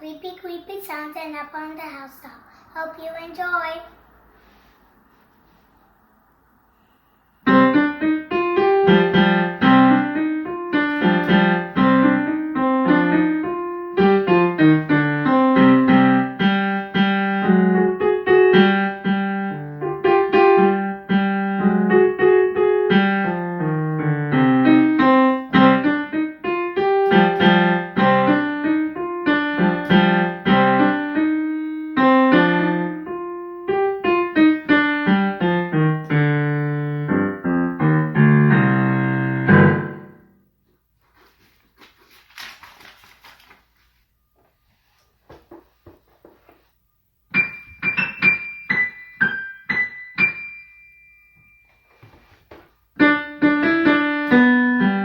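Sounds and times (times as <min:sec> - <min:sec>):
piano piece: 0:07.4 - 0:40.6, 0:47.3 - 0:55.0.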